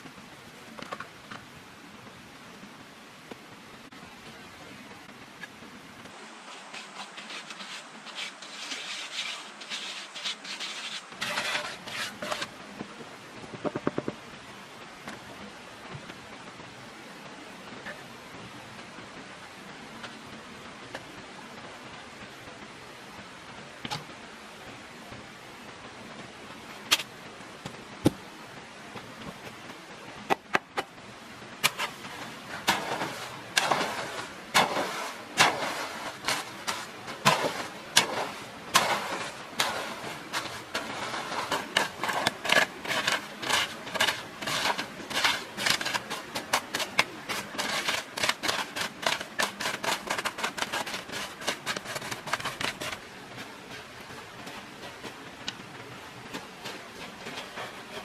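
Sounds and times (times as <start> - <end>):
sharp knocks and scrapes: 6.1 - 14.2, 26.9 - 28.2, 31.6 - 55.6, 56.2 - 58.0.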